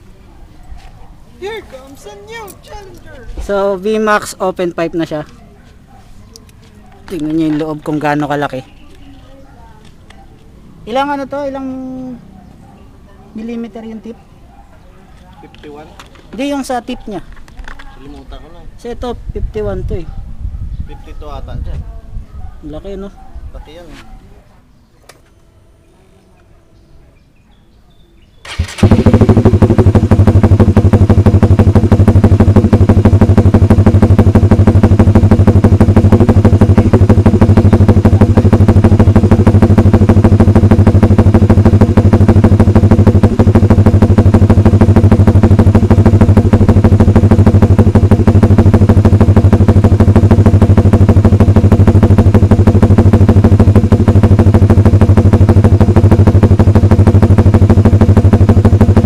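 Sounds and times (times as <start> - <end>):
motorcycle engine idling loud: 28.5 - 59.0.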